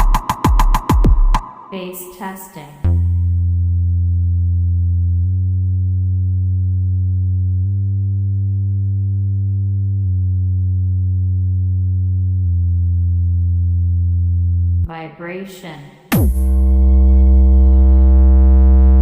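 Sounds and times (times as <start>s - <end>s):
low bass test tone: 2.8s - 14.9s, 16.1s - 19.0s.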